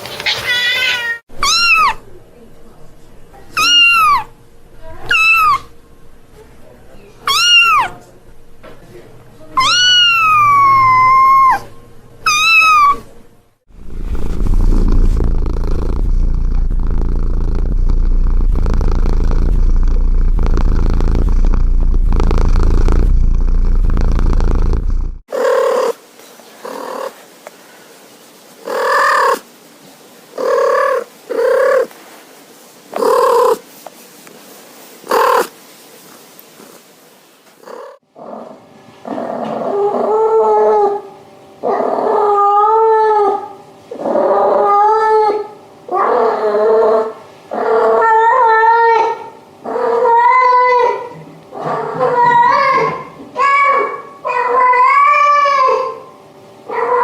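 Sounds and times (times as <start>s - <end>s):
cat meowing: 0.2s - 2.0s, 3.6s - 4.3s, 5.0s - 5.7s, 7.3s - 8.0s, 9.6s - 11.7s, 12.3s - 13.1s, 50.0s - 56.0s
cat whining calls: 0.2s - 2.0s, 3.6s - 4.3s, 5.0s - 5.7s, 7.3s - 8.0s, 9.6s - 13.1s, 47.8s - 56.0s
cat purring: 13.7s - 26.0s, 26.6s - 27.2s, 30.4s - 31.9s, 32.9s - 33.6s, 37.6s - 38.0s.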